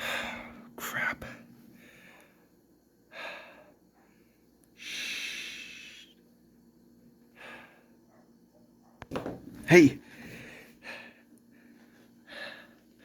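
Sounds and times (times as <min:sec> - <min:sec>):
person breathing heavily: 0:00.0 - 0:00.7, 0:01.6 - 0:02.5, 0:03.1 - 0:03.9, 0:04.8 - 0:06.1, 0:07.3 - 0:08.0, 0:10.0 - 0:13.0.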